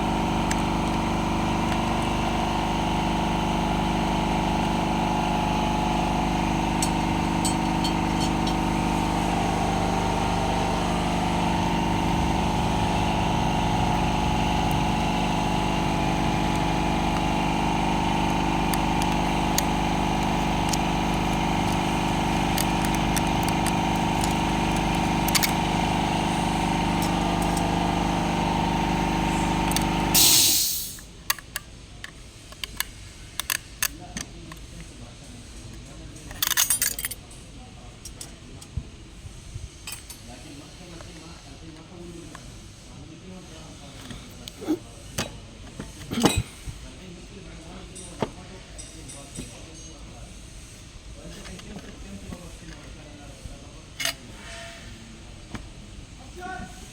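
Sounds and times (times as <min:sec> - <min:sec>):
motor humming: 0:00.0 - 0:31.0
sharp hiss: 0:30.2 - 0:31.0.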